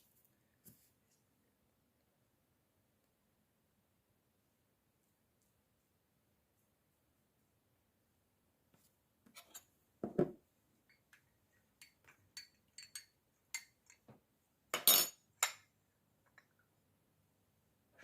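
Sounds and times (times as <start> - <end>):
utensils and glassware clinking: 11.8 - 14.0.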